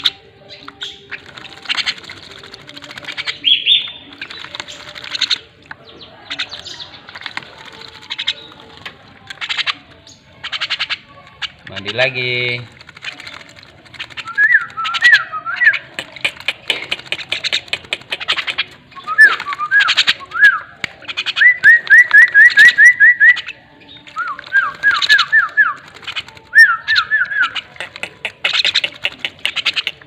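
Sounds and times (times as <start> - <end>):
bird splashing in water: 0.8 - 20.2, 20.8 - 30.0
bird whistling: 14.2 - 15.9, 19.0 - 23.6, 26.5 - 27.7.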